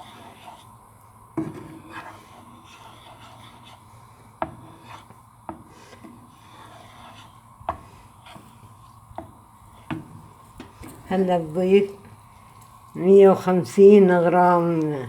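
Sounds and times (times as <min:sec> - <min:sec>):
spoon scraping a frying pan: 0:01.4 - 0:11.1.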